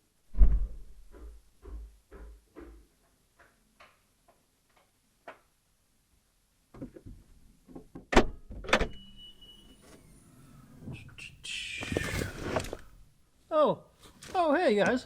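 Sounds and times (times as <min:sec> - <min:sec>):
evenly spaced thuds: 0:00.3 - 0:03.6.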